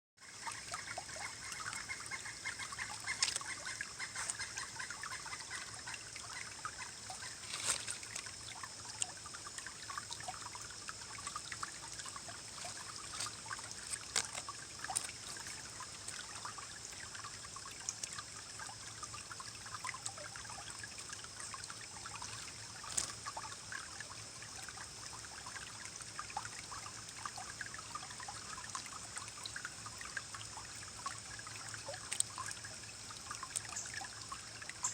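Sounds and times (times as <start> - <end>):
stream babbling over rocks: 0.2 - 34.9
water splashes: 0.2 - 34.9.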